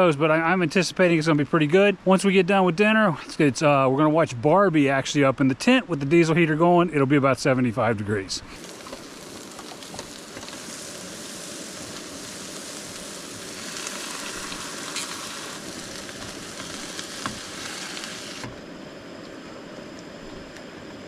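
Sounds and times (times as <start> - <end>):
campfire crackling and popping: 8.5 - 21.0.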